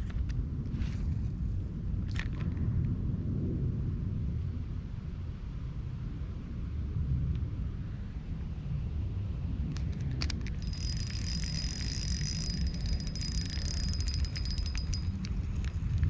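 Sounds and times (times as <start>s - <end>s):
spinning reel whirring and clicking: 10.5s - 15.3s.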